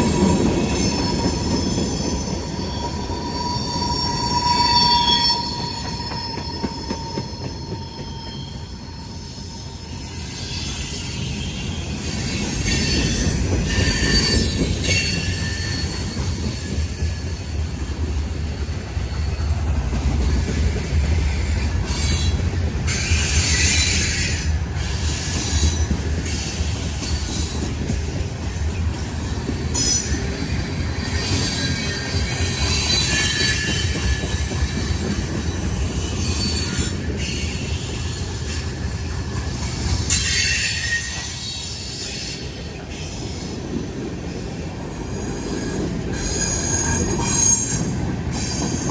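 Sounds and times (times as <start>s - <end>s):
high-pitched wheel squeal: 0.0s - 19.7s, 29.8s - 38.6s, 39.6s - 43.2s, 45.1s - 48.9s
freight train wheels rumbling: 0.0s - 48.9s.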